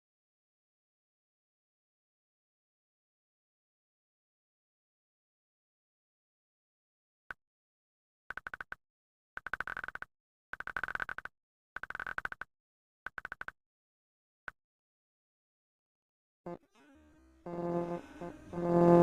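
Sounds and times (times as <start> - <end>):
fart sound effect: 17.5 - 19.0.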